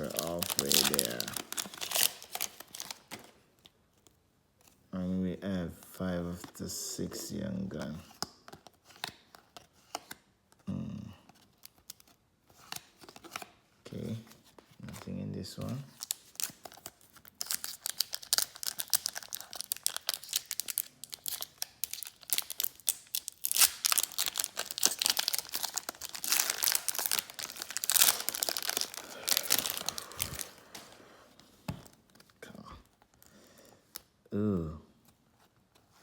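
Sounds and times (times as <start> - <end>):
card pack wrapper crinkling and tearing: 0.0 - 3.7, 15.6 - 31.0.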